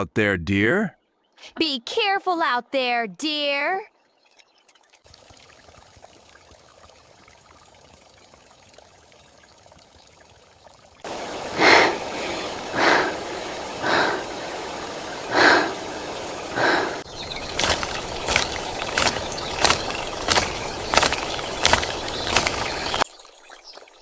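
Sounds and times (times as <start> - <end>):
rain hiss: 11.1 - 24.0
rushing ambience: 15.7 - 23.0.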